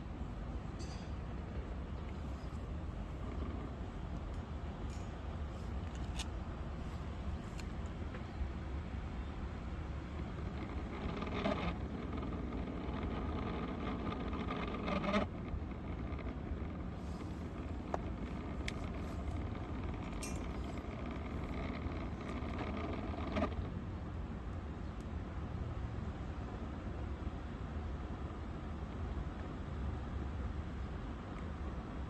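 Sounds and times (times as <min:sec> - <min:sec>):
electric fan motor running: 0:01.9 - 0:24.8.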